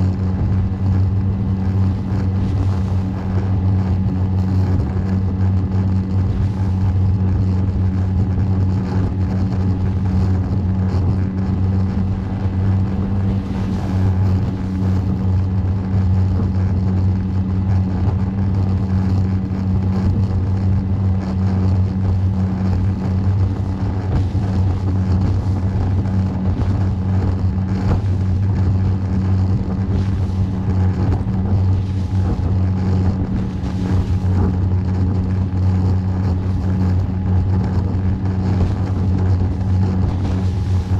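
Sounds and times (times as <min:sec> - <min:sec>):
boat engine humming: 0:00.0 - 0:40.9
water rushing: 0:00.0 - 0:40.9
wind: 0:00.0 - 0:40.9.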